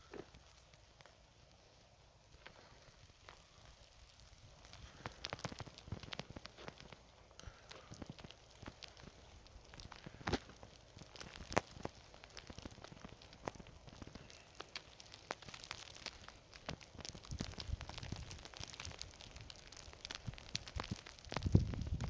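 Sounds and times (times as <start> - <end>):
snow ticking and crackling: 0.0 - 22.0
low wind rumble on microphone: 16.8 - 22.0.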